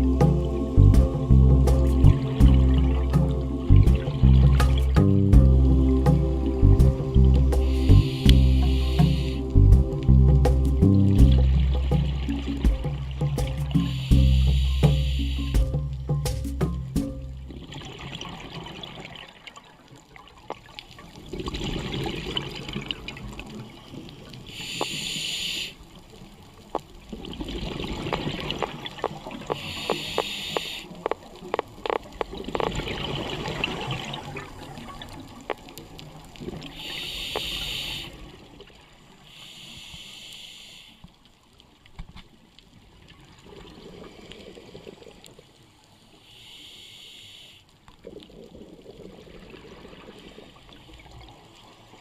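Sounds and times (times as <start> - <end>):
regulator hissing inhalations: 7.6 - 9.6, 13.8 - 15.6, 24.5 - 25.8, 29.5 - 30.9, 36.7 - 38.2, 39.3 - 41.0, 46.2 - 47.7.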